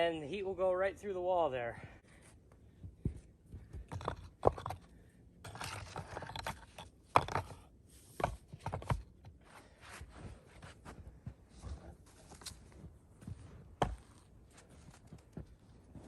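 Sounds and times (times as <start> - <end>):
stone scraping: 3.8 - 9.0.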